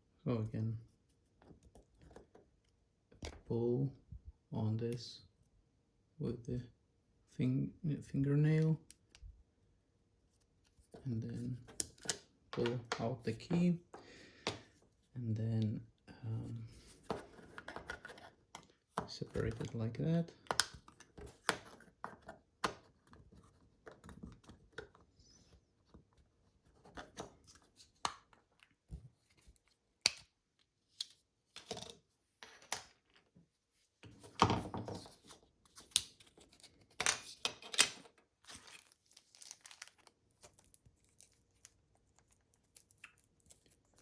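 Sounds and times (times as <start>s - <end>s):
plastic parts scraping and rustling: 16.6s - 25.2s.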